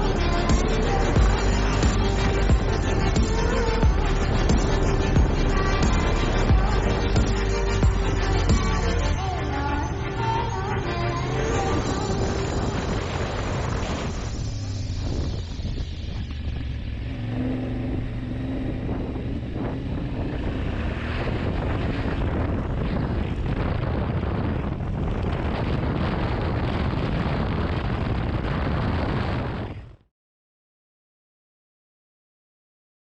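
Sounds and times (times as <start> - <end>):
motorcycle engine running: 0.0 - 9.0, 11.6 - 28.3
road noise: 0.0 - 30.0
wind buffeting microphone: 11.4 - 30.0.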